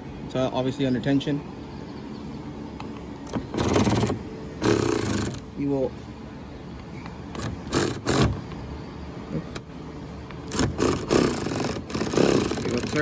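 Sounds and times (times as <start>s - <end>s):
ratchet scraping and rasping: 3.3s - 5.4s, 7.4s - 8.4s, 10.5s - 13.0s
sharp ratchet click: 3.3s - 5.4s, 7.4s - 8.4s, 10.5s - 13.0s.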